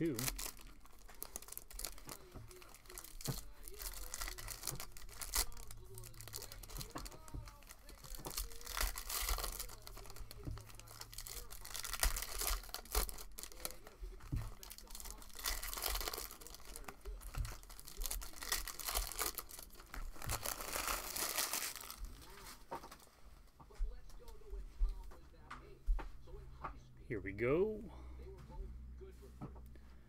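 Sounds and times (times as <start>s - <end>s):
foil wrappers crinkling and tearing: 0.0s - 23.1s.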